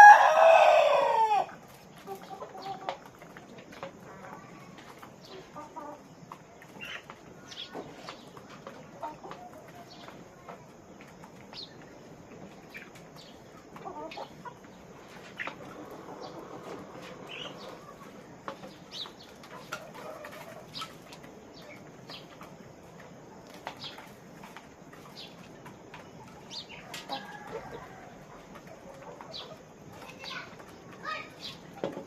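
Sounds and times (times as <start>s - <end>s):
chickens clucking: 0.0s - 32.0s.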